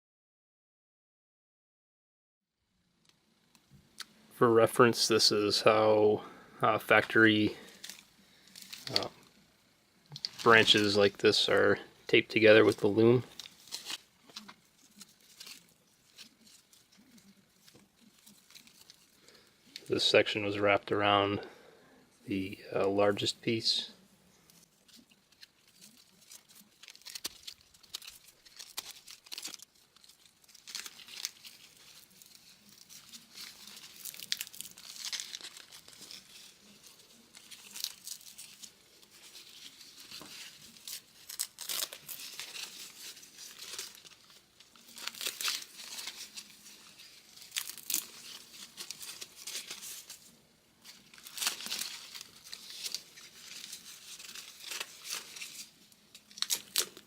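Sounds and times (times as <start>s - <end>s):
electrical tape crinkling and tearing: 3.0s - 21.2s, 22.8s - 57.0s.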